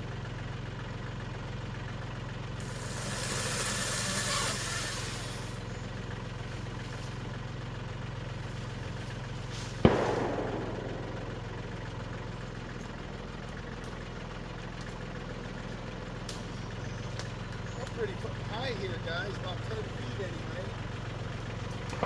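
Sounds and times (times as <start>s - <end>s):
tractor engine idling: 0.0s - 22.0s
sharp ringing bang: 9.8s - 13.2s.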